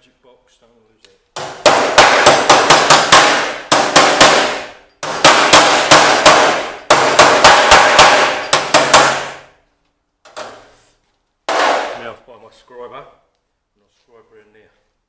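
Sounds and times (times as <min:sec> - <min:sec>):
hammer ringing on sheet steel: 0:01.4 - 0:09.5.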